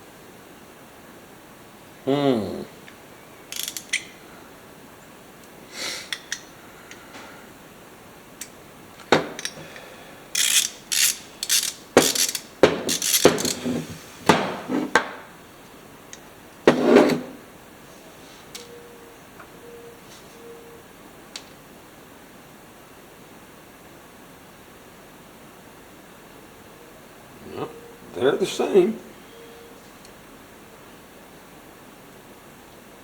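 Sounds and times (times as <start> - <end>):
metal parts and tools clattering: 10.4 - 13.8.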